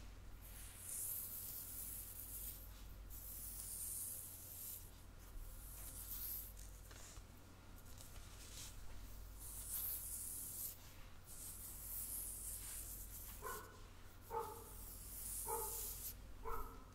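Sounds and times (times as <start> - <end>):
soft scratching and rubbing: 0.4 - 16.9.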